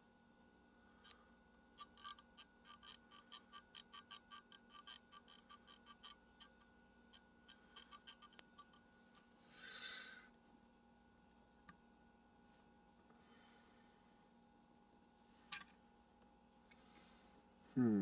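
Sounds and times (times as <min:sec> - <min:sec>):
small sharp metallic clicks: 0:01.8 - 0:08.8.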